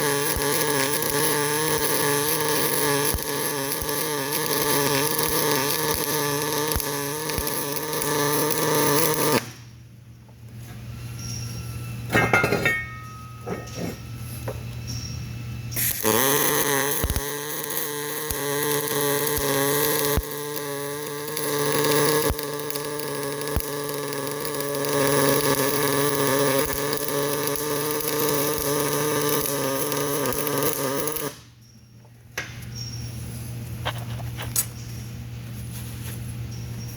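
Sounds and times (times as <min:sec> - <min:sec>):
welding arc buzzing and crackling: 0:00.0 - 0:09.8, 0:10.4 - 0:31.6
metallic clinks: 0:12.1 - 0:14.1.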